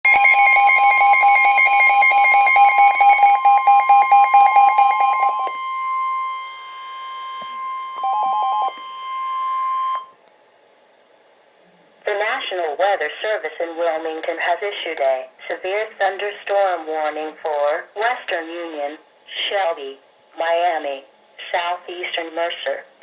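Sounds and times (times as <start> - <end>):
rapid pulsing alarm beeps: 0.1 - 10.2.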